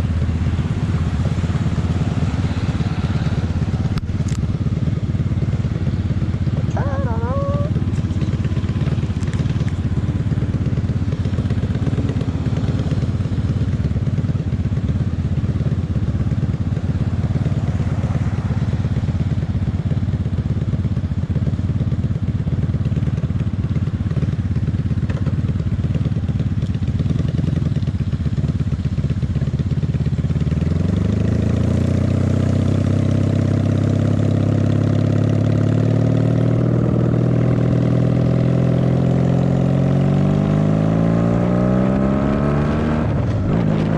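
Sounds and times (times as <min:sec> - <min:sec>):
motorcycle engine accelerating: 0:00.0 - 0:43.9.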